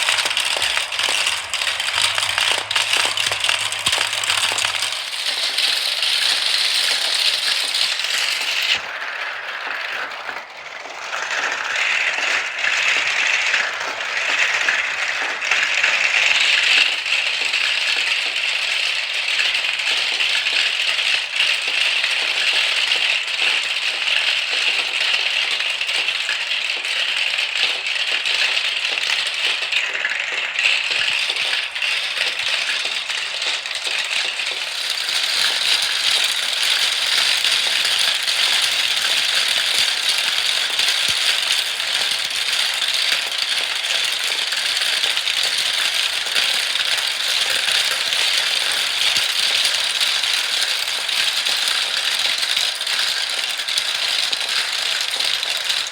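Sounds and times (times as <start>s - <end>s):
marbles rattling down a track: 0.0s - 55.9s.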